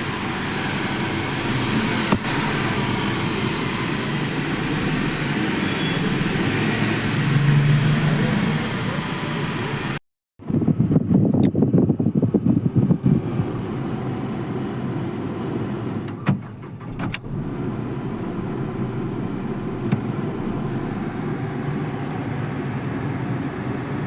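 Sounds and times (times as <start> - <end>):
car engine idling: 0.0 - 5.3, 16.4 - 23.9.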